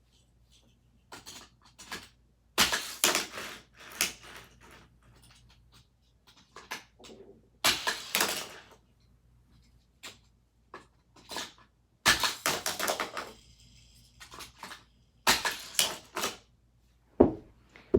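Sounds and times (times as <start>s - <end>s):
toy cars clattering on plastic track: 1.1s - 8.8s, 10.0s - 16.5s.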